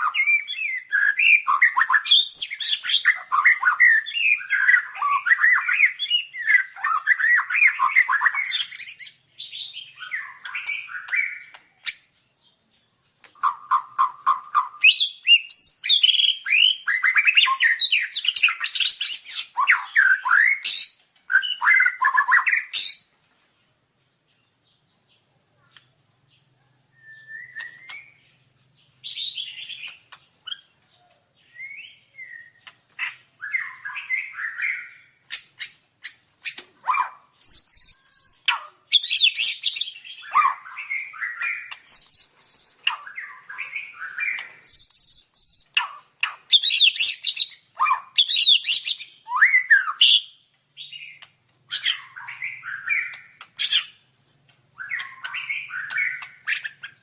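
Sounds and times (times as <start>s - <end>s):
bird singing: 0.0s - 57.0s
high bird whistle: 26.9s - 28.2s, 36.9s - 45.9s.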